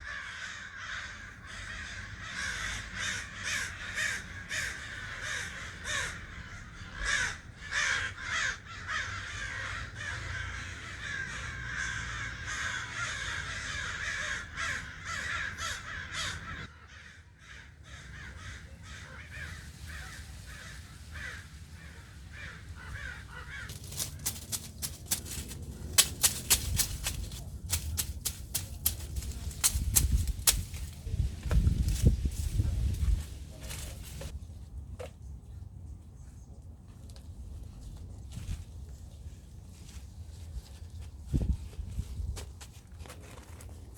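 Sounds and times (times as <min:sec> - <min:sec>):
harsh bird calls: 0:00.0 - 0:27.2.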